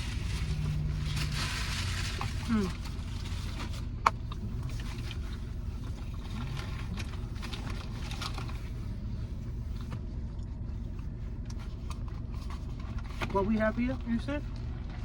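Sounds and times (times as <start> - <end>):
food wrappers crinkling: 0.0 - 3.9
low hum of car engine: 0.0 - 15.0.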